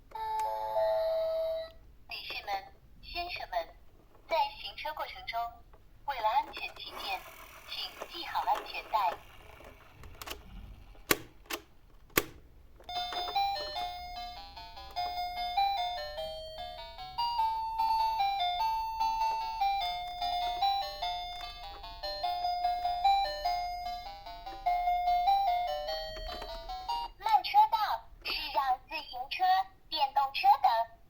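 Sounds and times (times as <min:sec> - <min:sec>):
sharp clicks: 0:09.6 - 0:12.5.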